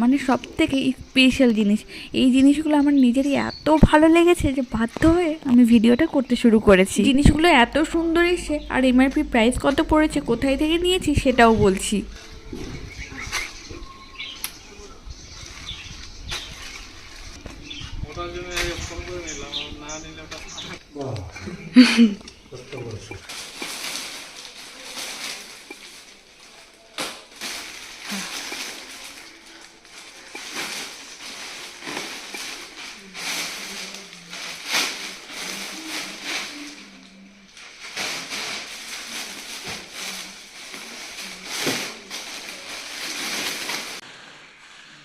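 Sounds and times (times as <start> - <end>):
packaging crackles: 22.8 - 44.0
packaging crinkling and rustling: 22.8 - 44.0.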